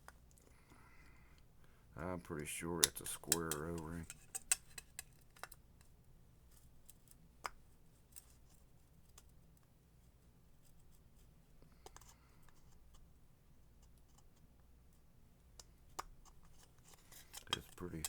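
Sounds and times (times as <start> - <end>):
pick clicking and scratching: 2.3 - 5.9, 15.6 - 18.0.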